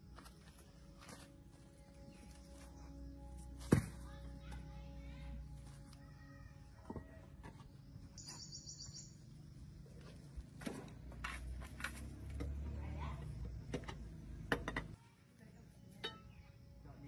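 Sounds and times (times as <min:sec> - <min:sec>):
high bird-like chirps: 0:08.2 - 0:09.3.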